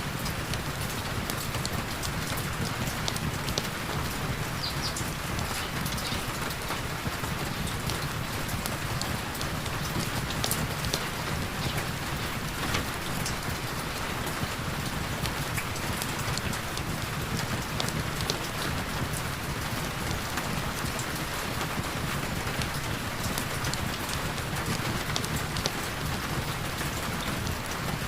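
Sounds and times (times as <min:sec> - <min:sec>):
heavy rain falling: 0:00.0 - 0:28.0
raindrops ticking: 0:00.0 - 0:28.0.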